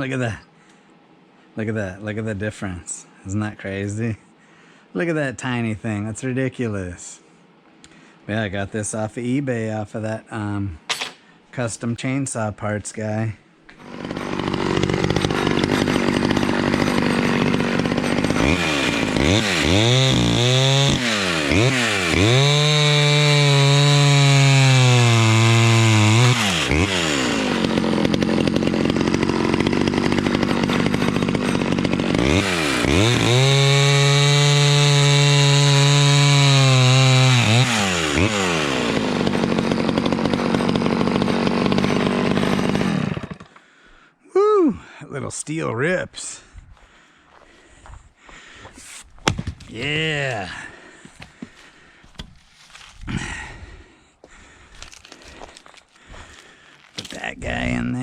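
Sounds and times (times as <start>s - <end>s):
chainsaw cutting wood: 13.7s - 43.7s, 48.6s - 57.7s.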